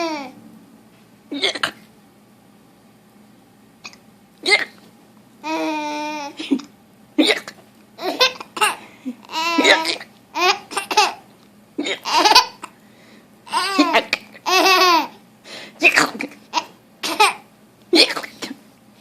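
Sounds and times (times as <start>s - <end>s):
woman hiccuping: 1.3s - 1.8s, 3.8s - 4.8s, 6.4s - 7.6s, 9.6s - 10.1s, 18.0s - 18.5s
baby laughing: 5.4s - 6.7s, 7.4s - 12.8s, 13.5s - 15.2s, 16.5s - 18.4s.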